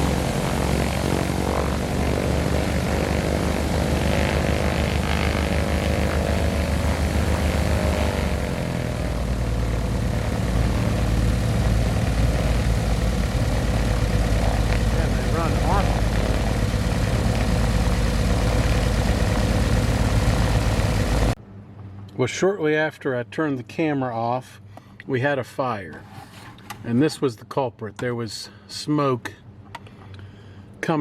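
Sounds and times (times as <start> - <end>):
piston aircraft engine running: 0.0 - 21.4.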